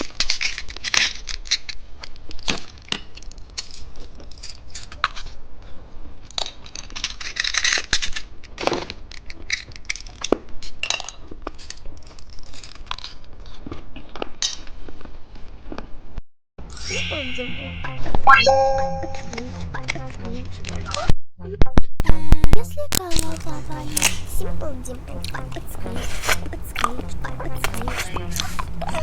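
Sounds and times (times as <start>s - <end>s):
plastic candy packaging crinkling: 23.0s - 29.0s.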